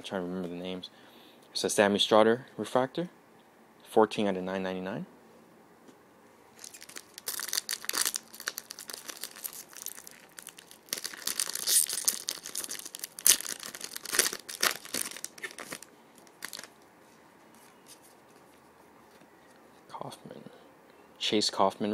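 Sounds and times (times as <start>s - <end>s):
wrapper tearing and crinkling: 6.6s - 16.8s.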